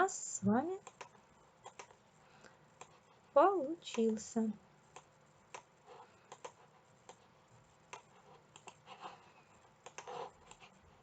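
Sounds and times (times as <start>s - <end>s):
mouse and keyboard clicks: 0.8s - 2.0s, 4.9s - 5.7s, 6.3s - 7.2s, 7.9s - 8.9s, 9.8s - 10.7s.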